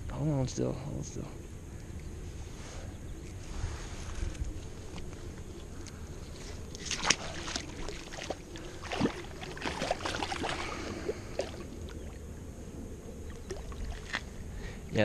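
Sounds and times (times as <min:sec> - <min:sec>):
shallow water splashing: 0:06.4 - 0:12.3, 0:13.2 - 0:14.5.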